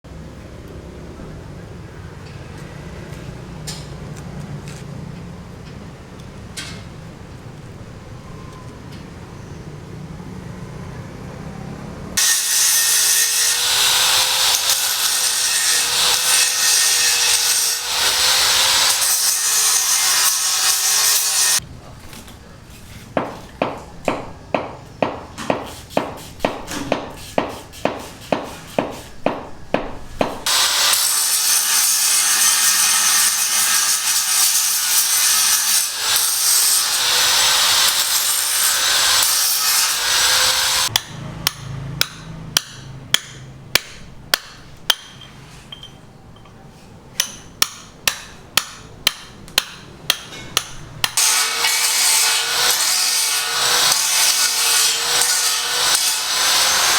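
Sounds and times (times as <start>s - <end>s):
steady cutting noise: 12.2s - 21.6s, 30.2s - 44.4s, 49.0s - 56.9s
hand hammer blows: 23.2s - 31.5s, 40.6s - 45.3s.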